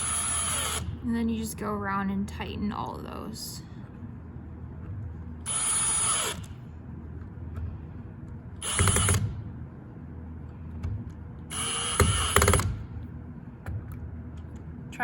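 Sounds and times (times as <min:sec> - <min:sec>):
drill driver tightening bolts: 0:05.5 - 0:06.5, 0:08.6 - 0:09.3, 0:11.5 - 0:12.8
rapid ratcheting clicks: 0:08.6 - 0:09.3, 0:11.5 - 0:12.8.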